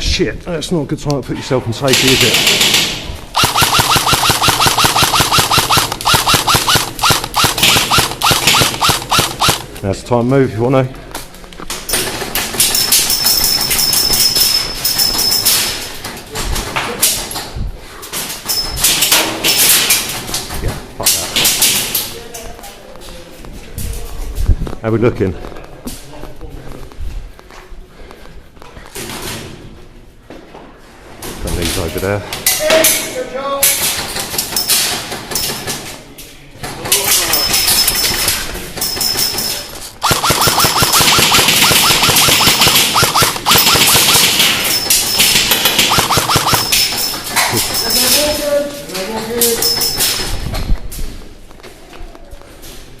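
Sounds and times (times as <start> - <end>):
airsoft guns firing bursts: 1.9 - 9.8, 40.0 - 47.2.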